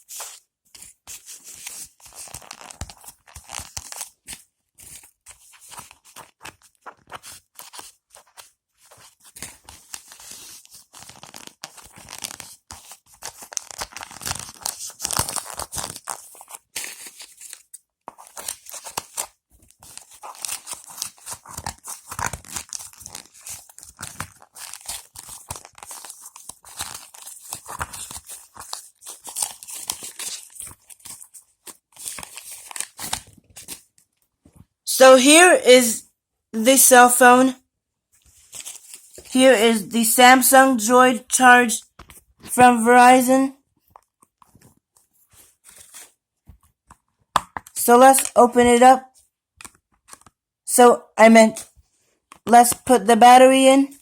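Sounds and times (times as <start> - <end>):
packaging tearing and crinkling: 8.9 - 33.8.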